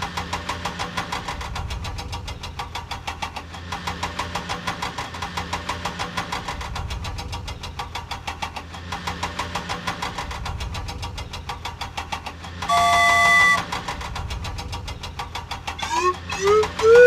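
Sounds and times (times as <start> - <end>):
vehicle engine chugging: 10.3 - 17.0.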